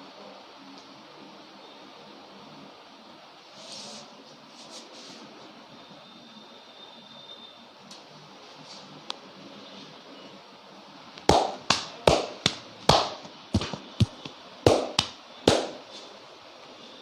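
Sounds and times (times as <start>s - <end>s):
hands slapping in massage: 11.2s - 15.9s.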